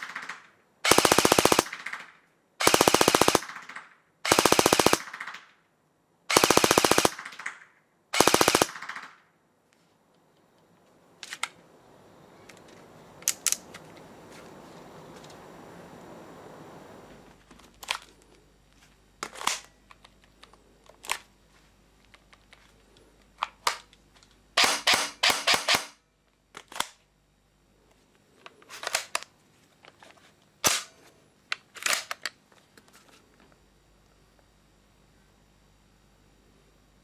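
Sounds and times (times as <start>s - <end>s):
airsoft gun shooting: 0.0s - 5.5s, 6.3s - 9.2s, 24.6s - 26.0s.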